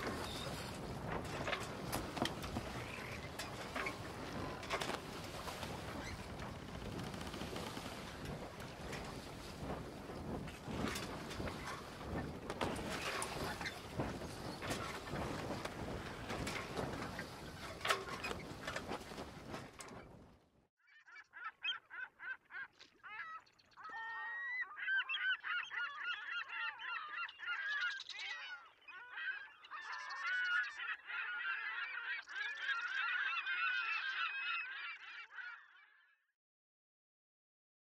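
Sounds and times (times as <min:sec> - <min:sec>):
flock of birds calling: 0:00.0 - 0:19.9, 0:23.2 - 0:35.9
rushing crackling noise: 0:00.0 - 0:20.5.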